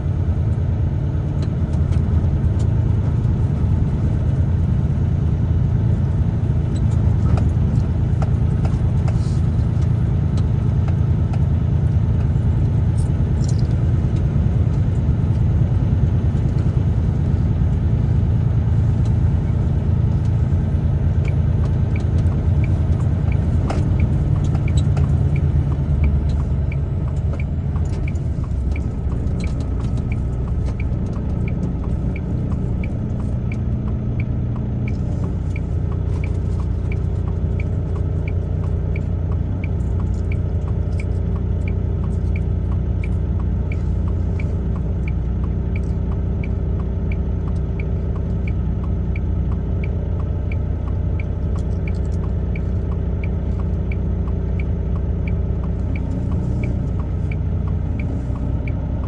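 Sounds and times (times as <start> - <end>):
truck engine and tyre rumble: 0.0 - 59.0
light regular ticking: 18.6 - 59.0.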